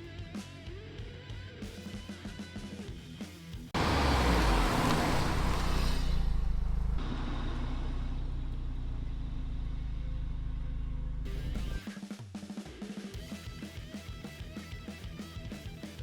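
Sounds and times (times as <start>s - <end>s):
car engine humming: 3.8s - 11.8s.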